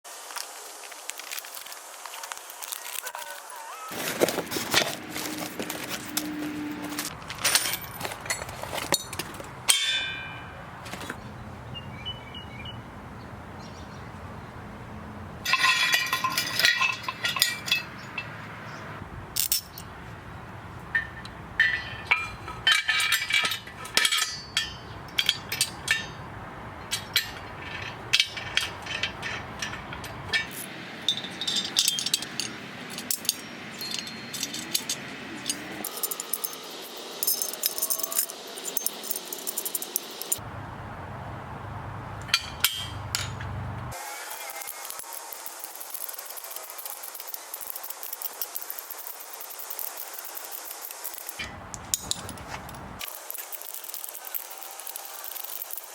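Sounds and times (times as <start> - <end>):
metal parts clinking and clanging: 2.3 - 11.2, 15.4 - 18.4, 19.4 - 19.9, 20.9 - 40.4, 42.2 - 55.9.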